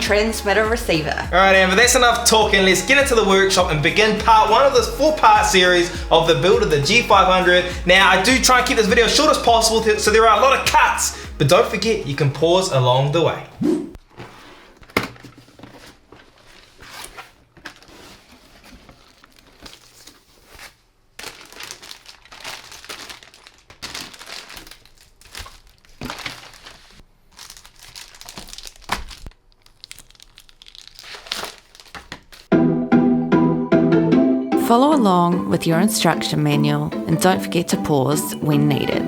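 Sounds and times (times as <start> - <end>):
packaging crinkling and rustling: 14.0 - 32.5
packaging tearing: 14.7 - 32.5.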